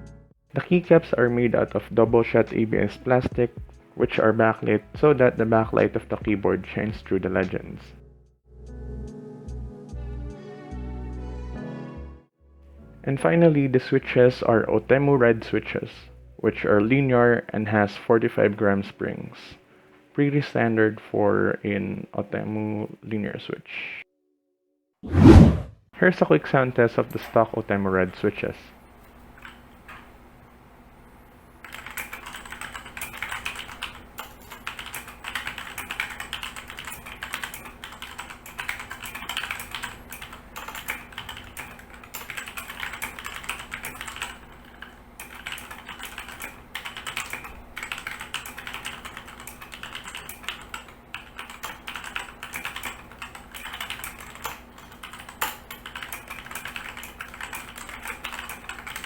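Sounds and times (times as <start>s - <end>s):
mechanical keyboard key clacking: 31.7s - 59.0s.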